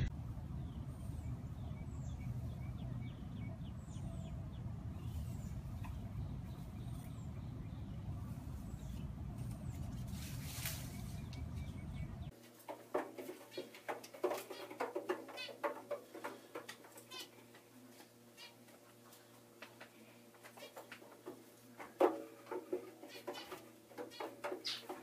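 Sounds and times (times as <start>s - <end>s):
low wind rumble: 0.0s - 12.3s
small bird chirping: 0.0s - 12.4s, 23.0s - 25.0s.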